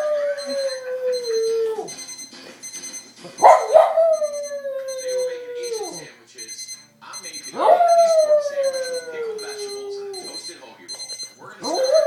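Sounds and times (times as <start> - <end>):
puppy howling: 0.0 - 1.9, 3.4 - 6.0, 7.6 - 10.3, 11.6 - 12.0
faint alarm clock beeping: 0.0 - 12.0.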